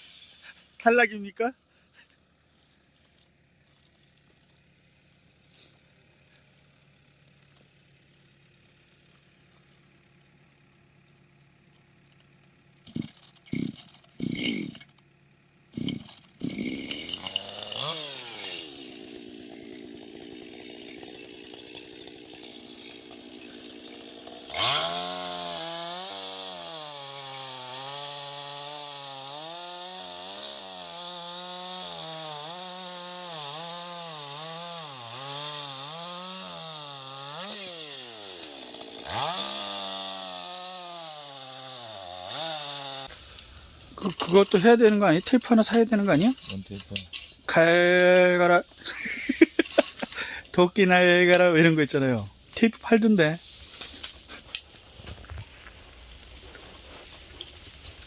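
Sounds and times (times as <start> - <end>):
chainsaw engine idling and revving: 1.9 - 55.3
chainsaw pull-start bursts: 12.3 - 54.5.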